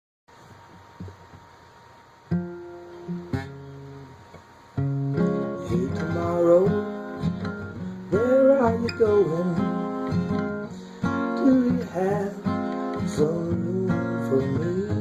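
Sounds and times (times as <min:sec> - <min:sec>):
acoustic guitar strumming: 0:02.2 - 0:15.0
person singing: 0:05.4 - 0:15.0.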